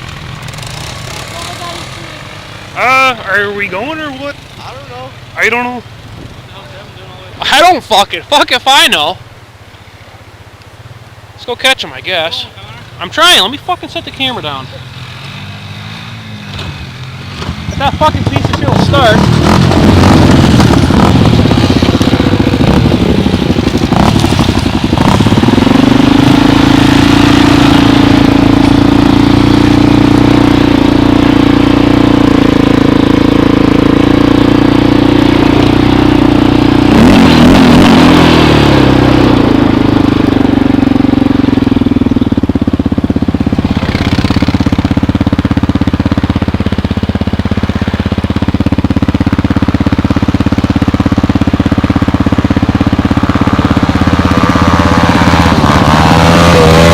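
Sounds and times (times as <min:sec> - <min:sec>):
atv engine running: 0:00.0 - 0:56.9.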